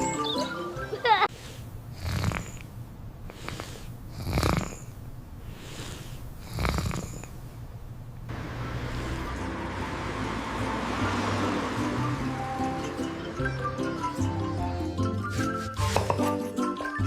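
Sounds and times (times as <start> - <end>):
dog snoring: 1.9 - 2.7, 3.3 - 5.0, 5.7 - 7.4.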